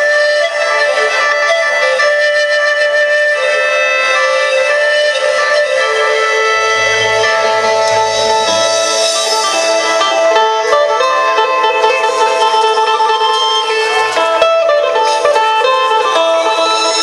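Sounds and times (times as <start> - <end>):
plucked lute melody: 0.0 - 17.0
steady drone: 5.9 - 13.0.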